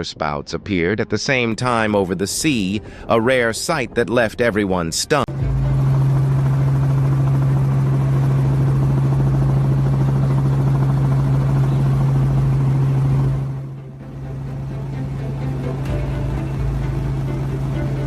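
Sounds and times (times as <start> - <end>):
engine humming with rapid pulsing: 5.3 - 18.0.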